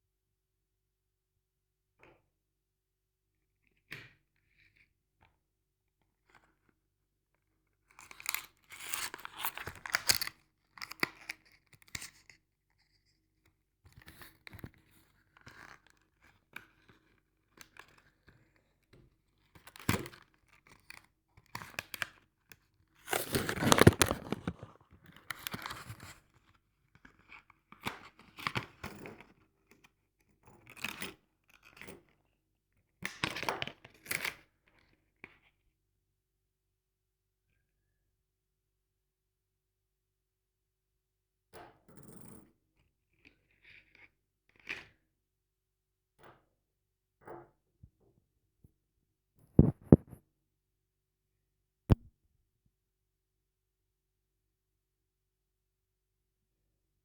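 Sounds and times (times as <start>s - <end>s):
rustling and crinkling handling noise: 23.1s - 24.8s.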